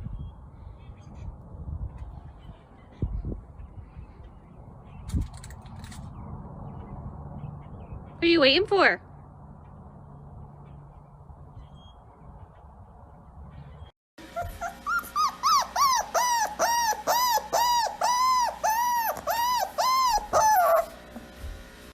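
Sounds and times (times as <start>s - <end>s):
dog whining: 14.2s - 21.3s.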